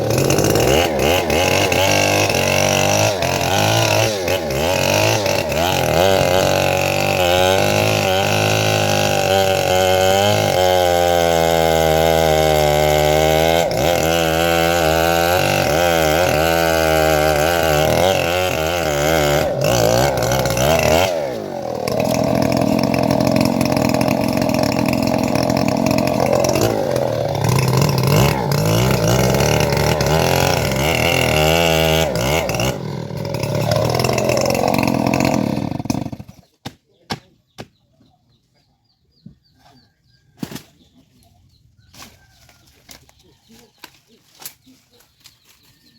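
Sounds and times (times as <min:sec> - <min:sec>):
sawmill engine sawing wood: 0:00.0 - 0:36.4.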